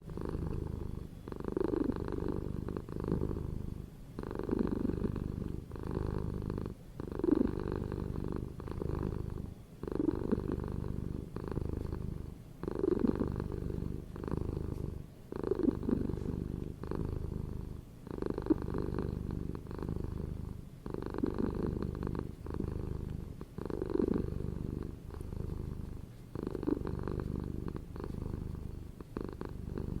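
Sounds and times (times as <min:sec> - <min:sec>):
cat purring: 0:00.0 - 0:30.0.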